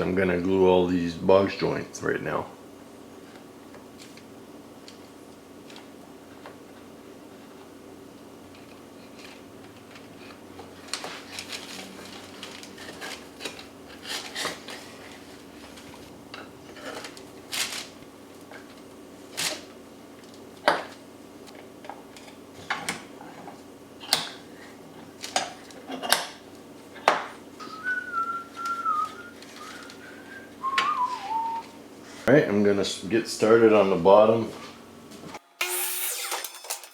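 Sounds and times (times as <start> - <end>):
person whistling a tune: 27.6 - 31.8.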